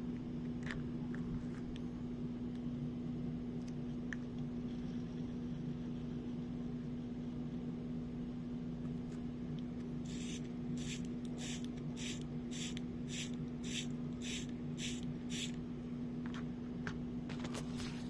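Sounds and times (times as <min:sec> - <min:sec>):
steady low hum: 0:00.0 - 0:18.0
short hisses of air: 0:10.1 - 0:15.6.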